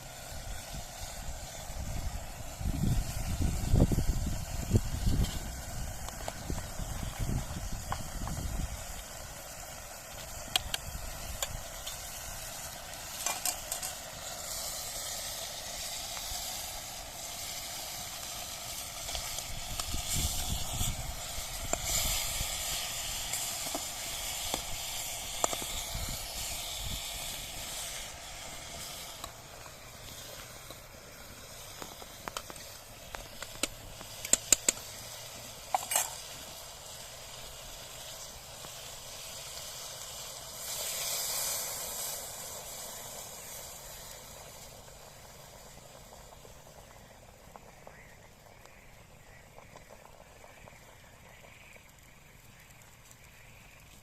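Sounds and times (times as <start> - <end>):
liver sizzling in a pan: 0.0 - 54.0
sharp clicks: 31.8 - 34.9.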